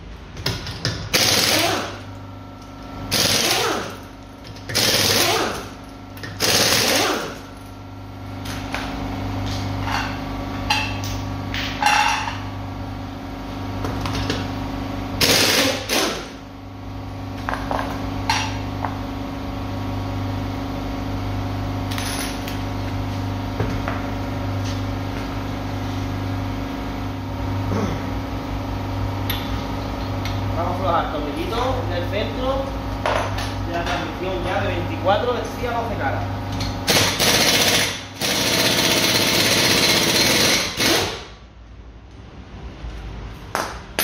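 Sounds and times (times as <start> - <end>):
steady low hum: 0.0 - 44.0
pneumatic impact wrench rattling: 0.5 - 2.0, 3.1 - 7.5, 15.2 - 16.4, 36.6 - 41.4.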